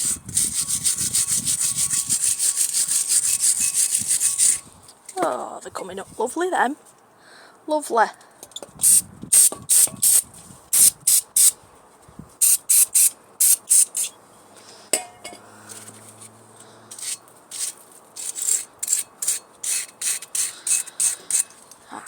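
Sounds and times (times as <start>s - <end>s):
stiff brush scrubbing: 0.0s - 4.8s, 16.9s - 21.6s.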